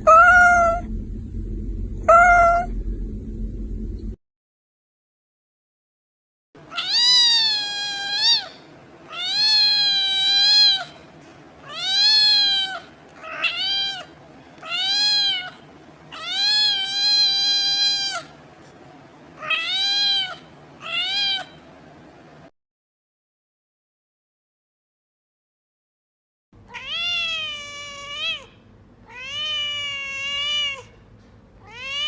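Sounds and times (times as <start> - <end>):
cat meowing: 0.0 - 0.9, 2.1 - 2.7, 6.7 - 11.0, 11.6 - 18.3, 19.4 - 21.6, 26.7 - 31.0, 31.6 - 32.0.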